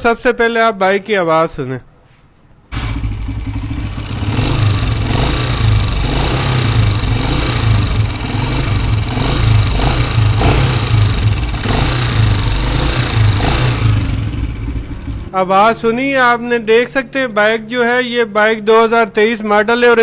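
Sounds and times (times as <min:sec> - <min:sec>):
motorcycle engine idling: 0:02.7 - 0:16.0.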